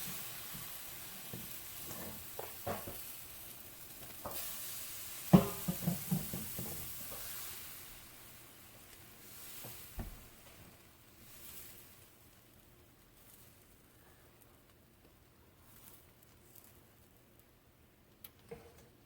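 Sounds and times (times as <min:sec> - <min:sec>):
batter sizzling in a pan: 0:00.0 - 0:17.6
knocks against a pan: 0:05.3 - 0:07.2.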